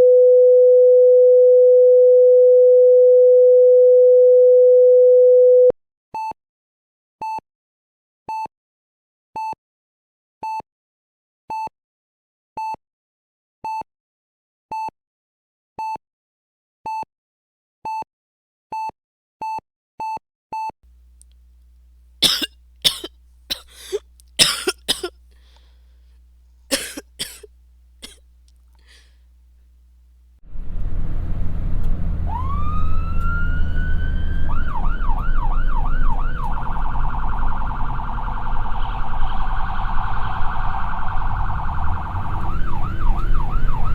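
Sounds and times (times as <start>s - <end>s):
loud low rumble: 30.4s - 35.9s, 36.5s - 43.9s
ambulance siren wailing: 32.1s - 43.9s.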